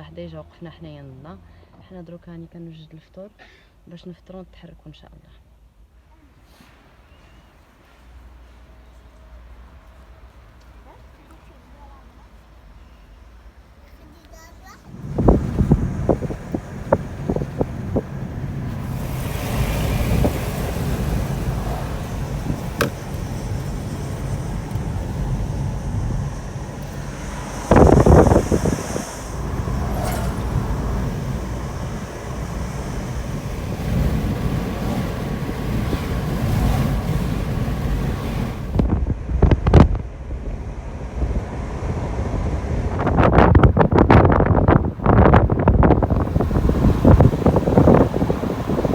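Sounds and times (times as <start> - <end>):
road rumble: 6.7 - 48.9
car engine: 14.8 - 48.9.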